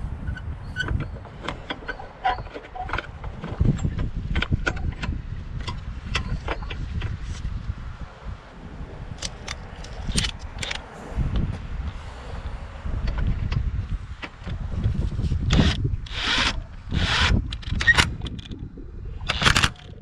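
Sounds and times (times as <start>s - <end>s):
wind rumble on microphone: 0.0s - 20.0s
metallic clicks of hand tools: 9.2s - 10.8s, 17.2s - 18.6s, 19.2s - 20.0s.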